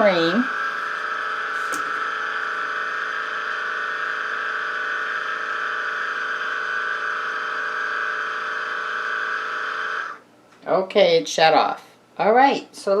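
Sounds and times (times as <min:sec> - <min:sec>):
coffee maker electric buzz: 0:00.0 - 0:10.2.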